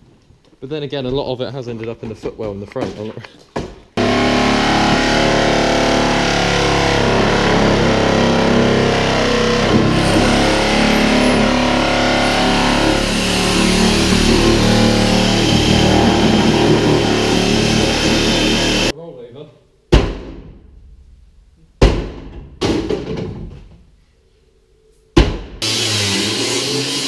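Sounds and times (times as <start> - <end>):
car engine at high revs: 4.0 - 18.9.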